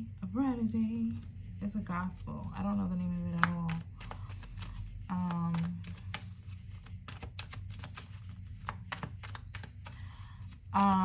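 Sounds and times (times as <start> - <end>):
cards shuffling and snapping: 2.6 - 11.0.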